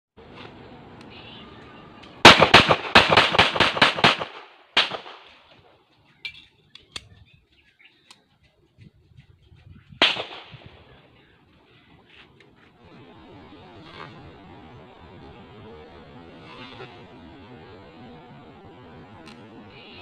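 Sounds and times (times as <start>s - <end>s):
pistol shots: 2.2s - 5.4s, 10.0s - 10.8s
faint clicks: 8.0s - 8.6s.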